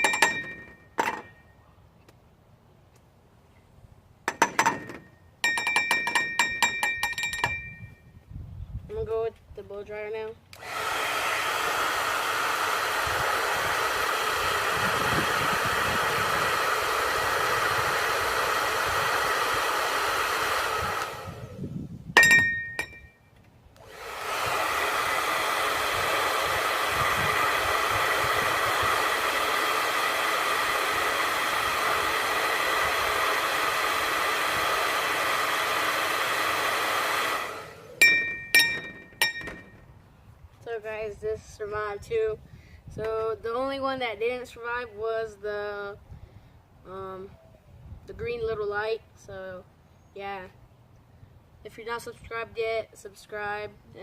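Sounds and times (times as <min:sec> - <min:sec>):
glassy ring: 0:00.0 - 0:01.6, 0:04.4 - 0:08.0, 0:22.2 - 0:23.3, 0:38.0 - 0:39.8
hair dryer blowing: 0:10.6 - 0:21.7, 0:23.8 - 0:39.6.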